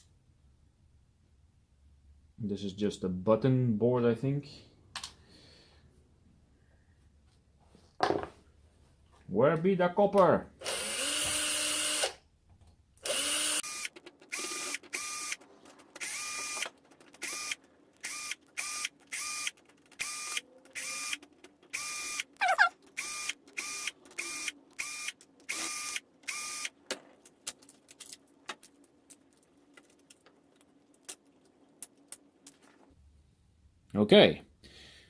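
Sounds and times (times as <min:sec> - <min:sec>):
cordless drill whining in bursts: 0:10.6 - 0:12.2, 0:13.0 - 0:15.4, 0:16.0 - 0:21.2, 0:21.8 - 0:22.3, 0:23.0 - 0:26.7
small parts clicking and tapping: 0:12.5 - 0:32.8.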